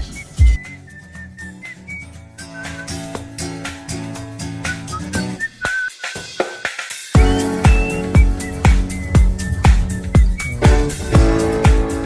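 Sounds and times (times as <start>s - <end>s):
drum beat: 0.0s - 0.8s, 5.9s - 12.0s
whistled melody over bass line: 0.0s - 12.0s.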